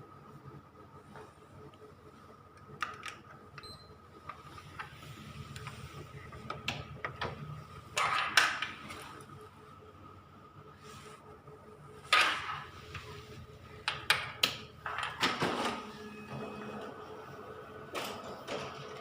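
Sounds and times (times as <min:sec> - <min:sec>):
steady hum: 0:00.0 - 0:19.0
photocopier clicking and clattering: 0:14.1 - 0:15.9.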